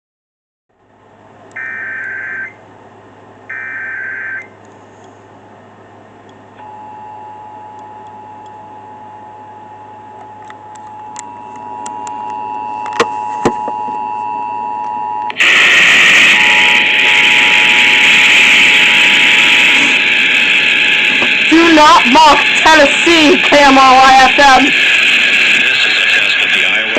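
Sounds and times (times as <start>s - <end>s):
loud rush of noise: 15.4s - 26.9s
warbling data bursts: 15.4s - 26.9s.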